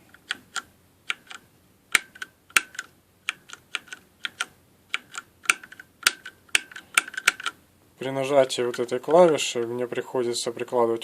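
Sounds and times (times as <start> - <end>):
mechanical keyboard keys clacking: 2.0 - 7.6.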